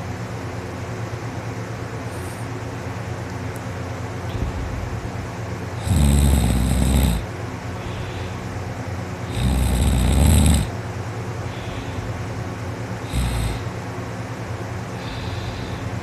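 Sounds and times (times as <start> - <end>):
heavy snoring: 5.8 - 7.3, 9.2 - 10.8, 13.0 - 13.8.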